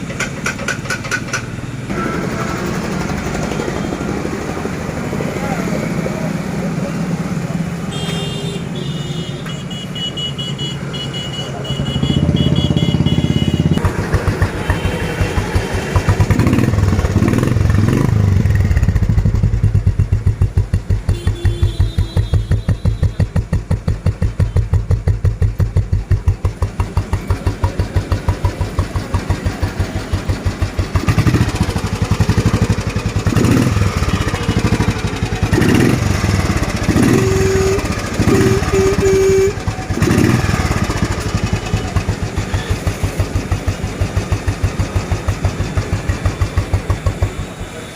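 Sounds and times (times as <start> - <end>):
motorcycle engine idling: 11.6 - 47.8.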